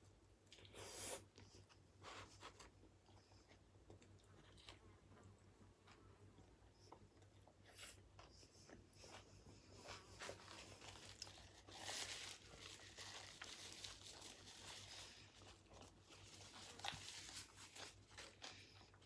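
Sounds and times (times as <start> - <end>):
paper wrapper crinkling: 10.2 - 18.6.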